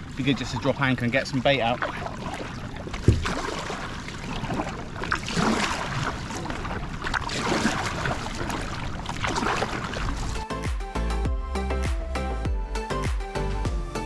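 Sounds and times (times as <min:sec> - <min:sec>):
water lapping against kayak hull: 0:00.0 - 0:10.4.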